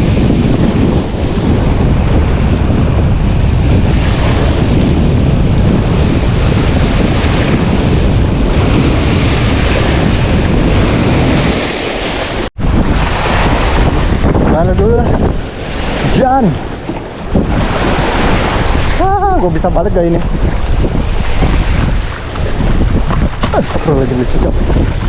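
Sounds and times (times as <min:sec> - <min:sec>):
sea waves rushing: 0:00.0 - 0:25.0
wind buffeting microphone: 0:00.0 - 0:25.0.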